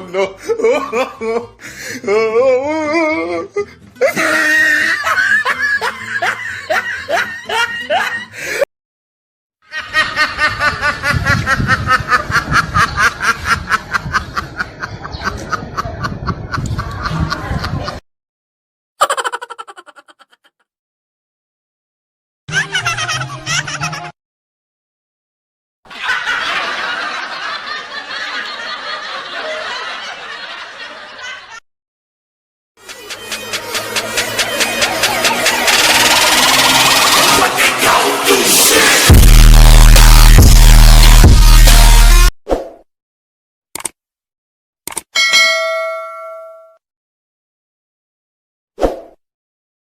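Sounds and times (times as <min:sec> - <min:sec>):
audience laughing: 0:04.0 - 0:08.4, 0:09.7 - 0:18.0, 0:22.5 - 0:24.1, 0:25.9 - 0:31.6, 0:32.8 - 0:39.1
rapid high-pitched laughing: 0:19.0 - 0:20.6, 0:22.5 - 0:24.1, 0:32.8 - 0:39.1.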